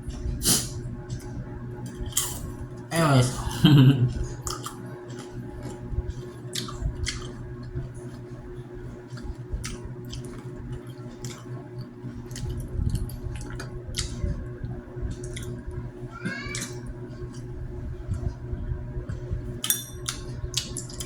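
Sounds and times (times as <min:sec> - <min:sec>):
steady low hum: 0:00.0 - 0:21.0
wet chewing and smacking: 0:04.1 - 0:14.4, 0:15.0 - 0:15.8, 0:20.0 - 0:21.0.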